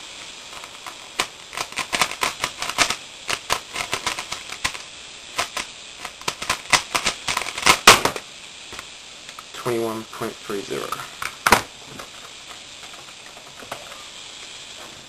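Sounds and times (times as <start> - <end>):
plastic puzzle cube clicking: 0.6 - 4.8
loud sharp plastic clack: 0.6 - 9.5, 10.9 - 13.9.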